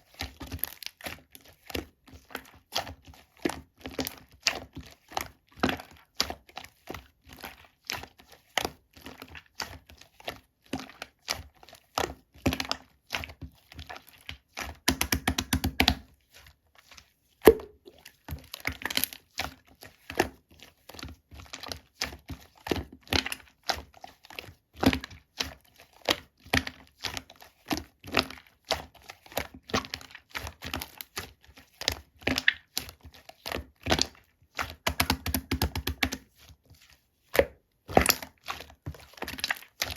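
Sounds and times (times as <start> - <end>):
slime sticky clicks and pops: 17.4 - 17.9.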